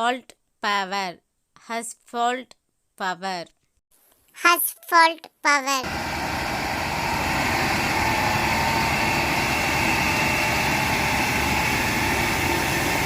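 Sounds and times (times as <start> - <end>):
paver engine running: 5.8 - 13.0.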